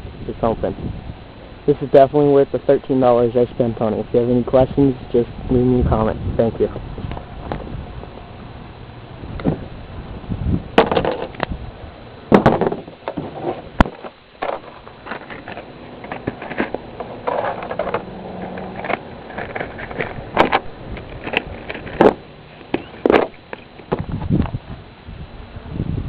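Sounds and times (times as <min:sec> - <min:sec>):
objects being handled: 0:12.3 - 0:24.0.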